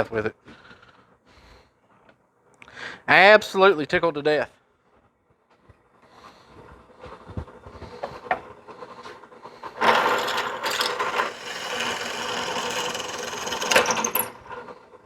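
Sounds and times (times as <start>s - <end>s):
drill press clicks: 9.8s - 14.4s
drill press bit cutting whir: 9.8s - 14.6s.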